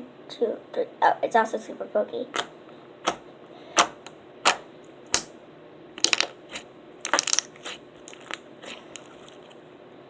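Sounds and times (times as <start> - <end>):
slime popping and crackling: 2.4 - 3.2, 3.8 - 5.3, 6.0 - 9.6.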